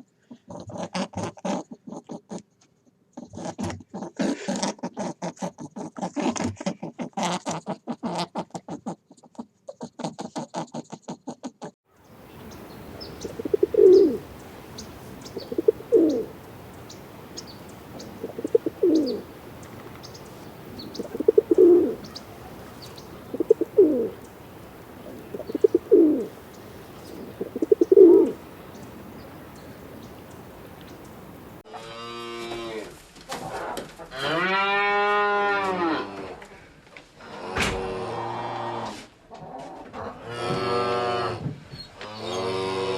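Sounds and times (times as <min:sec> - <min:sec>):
small birds chirping: 0:12.0 - 0:31.6
pigeon cooing: 0:12.2 - 0:31.6.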